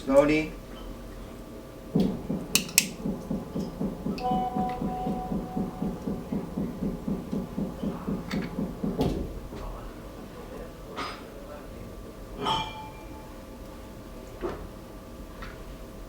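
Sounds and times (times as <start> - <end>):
machine rhythmic pulsing: 1.9 - 10.4.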